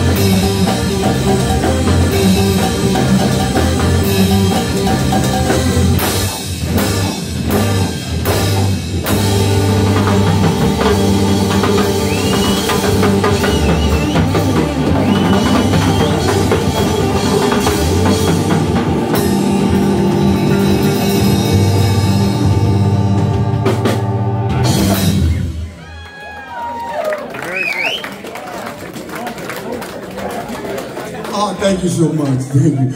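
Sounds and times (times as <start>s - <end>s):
electric guitar bending notes: 0.0s - 25.8s
bass guitar: 0.0s - 25.9s
drum kit: 0.0s - 25.9s.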